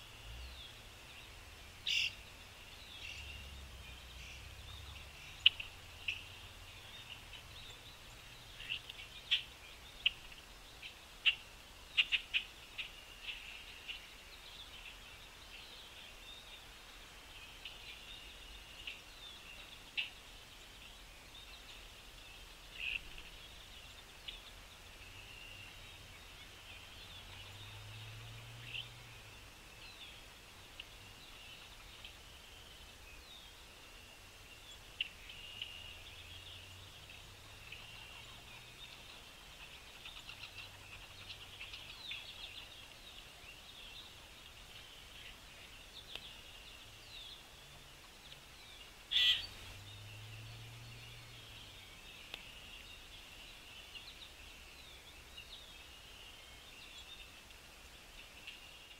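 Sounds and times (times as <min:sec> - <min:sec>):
songbirds chirping: 0:00.0 - 0:58.9
sharp bird calls: 0:01.8 - 0:02.3, 0:03.0 - 0:14.1, 0:48.8 - 0:54.2.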